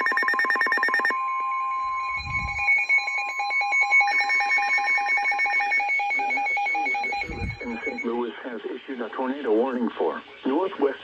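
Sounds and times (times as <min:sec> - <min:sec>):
rapid pulsing alarm beeps: 0:00.0 - 0:08.2
steady alert tone: 0:00.0 - 0:08.2.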